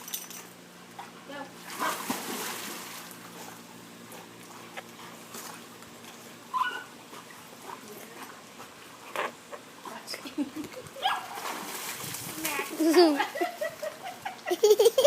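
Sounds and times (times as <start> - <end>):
dog whining: 6.5 - 6.9.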